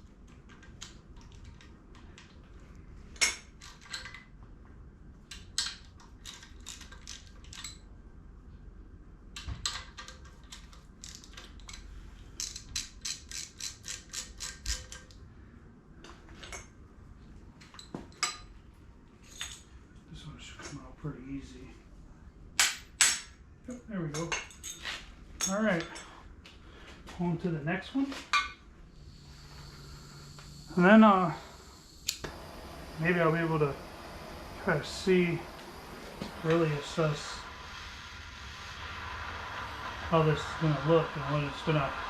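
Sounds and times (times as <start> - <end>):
hand ratchet clicking: 9.7 - 15.2.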